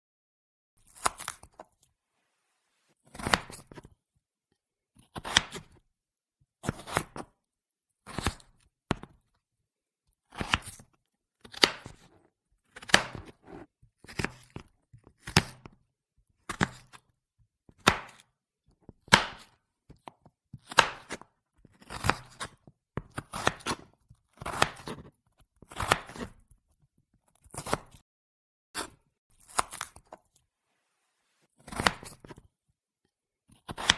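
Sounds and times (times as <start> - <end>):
knife chopping vegetables: 3.1 - 3.8, 11.5 - 12.1, 12.8 - 15.8, 20.6 - 21.2, 21.8 - 26.4, 31.6 - 32.4, 33.6 - 33.9.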